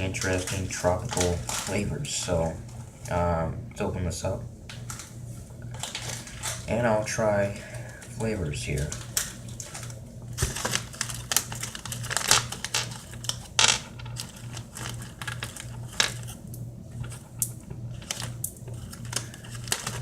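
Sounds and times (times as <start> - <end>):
candy packet opening: 0.0 - 1.9, 8.7 - 17.2, 17.9 - 20.0
hard candies clicking and rattling: 8.7 - 17.2, 17.9 - 20.0.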